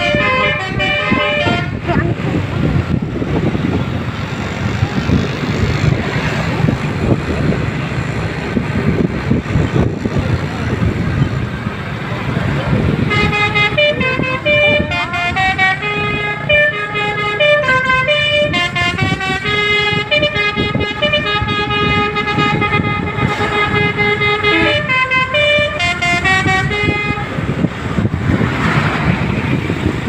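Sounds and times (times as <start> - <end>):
musical air horns playing tune: 0.0 - 1.9, 13.0 - 27.5
bus engine running: 0.0 - 30.0.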